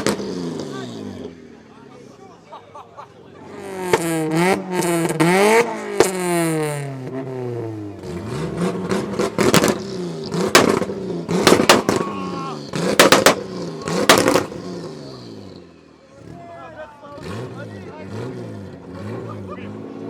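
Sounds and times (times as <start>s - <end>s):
car engine revving: 0.0s - 2.2s, 3.3s - 20.0s
launch limiter bangs and crackles: 10.4s - 12.2s, 12.8s - 14.6s.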